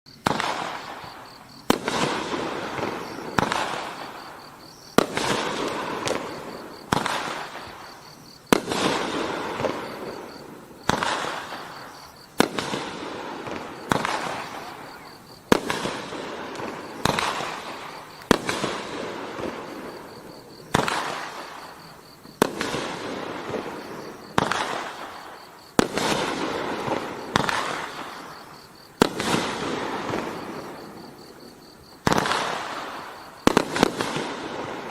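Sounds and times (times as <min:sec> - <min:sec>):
firework crackling tail: 0:00.2 - 0:34.9
firework shots: 0:00.2 - 0:34.9.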